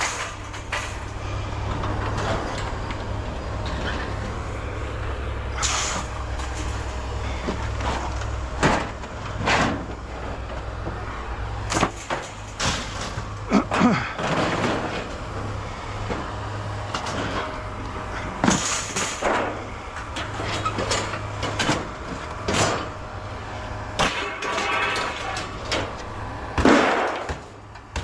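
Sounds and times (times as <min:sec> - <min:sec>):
scrap metal knocks and clanks: 0:00.0 - 0:28.0.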